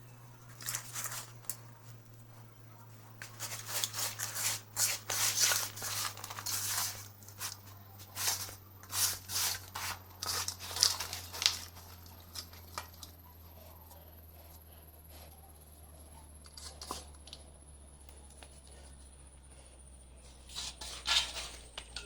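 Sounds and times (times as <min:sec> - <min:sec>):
dry clay crumbling and crunching: 0:03.0 - 0:13.2.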